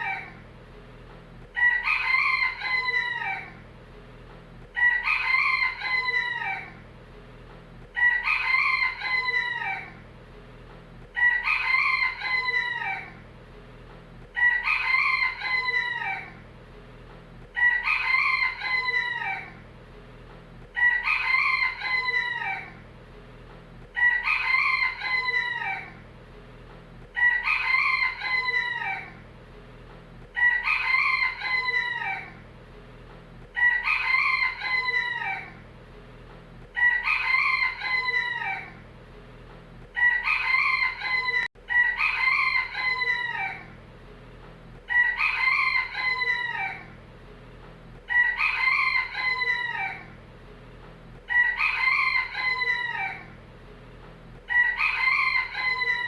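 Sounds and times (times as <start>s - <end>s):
rooster crowing: 0.0s - 0.4s, 1.4s - 3.6s, 4.6s - 6.8s, 7.8s - 10.0s, 11.0s - 13.2s, 14.2s - 16.4s, 17.4s - 19.6s, 20.6s - 22.8s, 23.8s - 26.0s, 27.0s - 29.2s, 30.2s - 32.4s, 33.4s - 35.6s, 36.7s - 38.8s, 39.9s - 43.8s, 44.8s - 47.0s, 48.0s - 50.2s, 51.2s - 53.4s, 54.4s - 56.0s.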